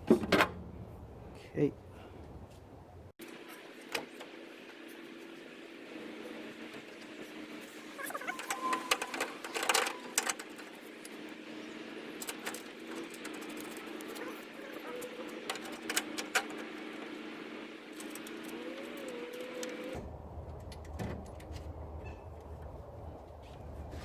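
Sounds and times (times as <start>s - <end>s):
steady low hum: 19.9s - 24.0s.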